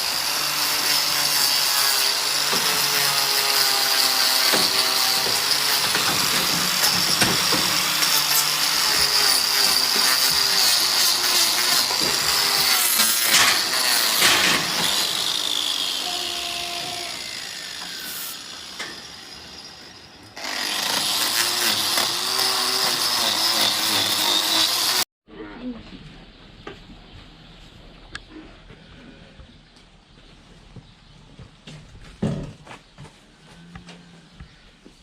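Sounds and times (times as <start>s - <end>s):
power tool whining: 0.0s - 25.1s.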